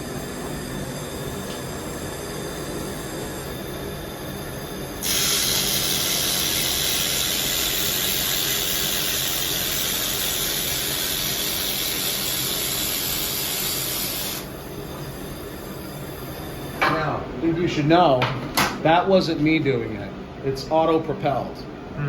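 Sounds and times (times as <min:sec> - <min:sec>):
laser welder hiss: 0:00.0 - 0:16.9.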